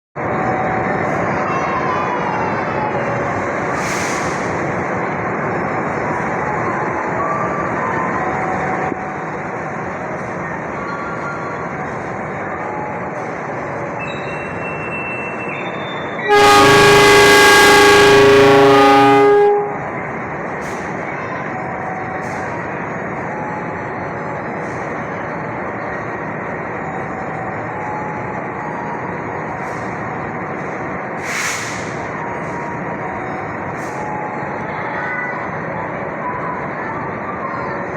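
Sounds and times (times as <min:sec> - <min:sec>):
train rumble: 0:00.2 - 0:37.9
locomotive horn chord: 0:16.3 - 0:19.9
short hiss: 0:31.2 - 0:32.0.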